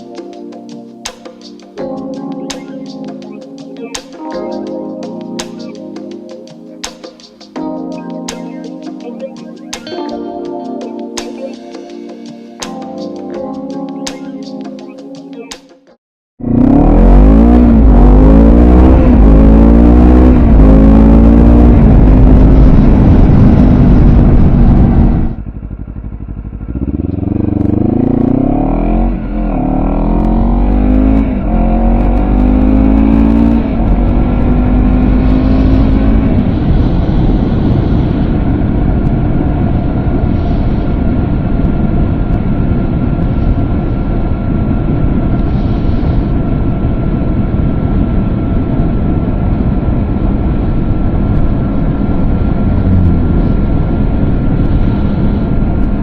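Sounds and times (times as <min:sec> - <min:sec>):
motorcycle engine revving: 0:16.4 - 0:45.7, 0:52.3 - 0:56.0.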